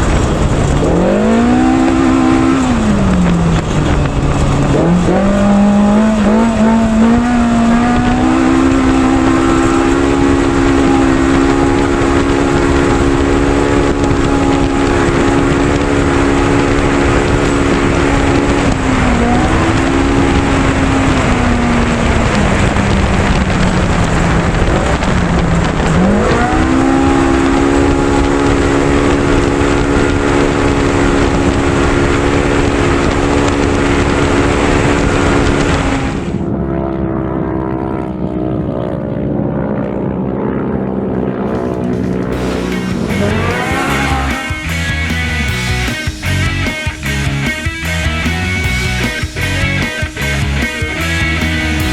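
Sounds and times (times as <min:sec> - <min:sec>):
steady rush of noise: 0:00.0 - 0:36.8, 0:41.4 - 0:51.9
engine revving under load: 0:00.0 - 0:51.9.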